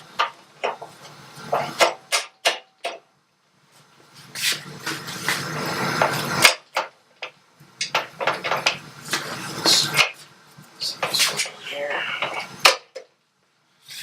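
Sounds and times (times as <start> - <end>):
metal parts clanking and scraping: 0.2 - 3.0.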